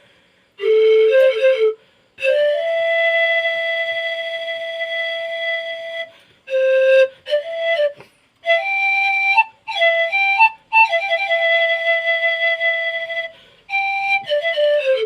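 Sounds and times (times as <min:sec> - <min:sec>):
bamboo panpipe playing: 0:00.6 - 0:15.0.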